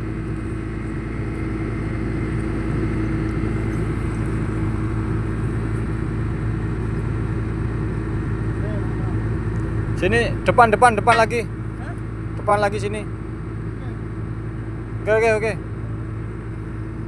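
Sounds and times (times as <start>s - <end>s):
diesel engine droning: 0.0s - 17.0s.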